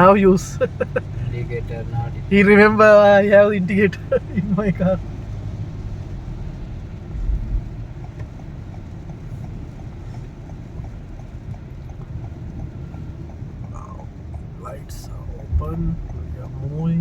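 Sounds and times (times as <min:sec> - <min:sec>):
car engine idling: 0:00.0 - 0:17.0
faint regular ticking: 0:00.0 - 0:17.0
road and rain noise: 0:00.0 - 0:17.0
low thump: 0:15.4 - 0:16.1.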